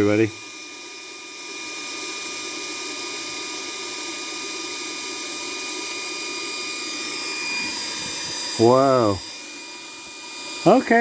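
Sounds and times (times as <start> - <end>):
induction heater humming: 0.0 - 11.0
high-pitched whining tones: 4.2 - 11.0.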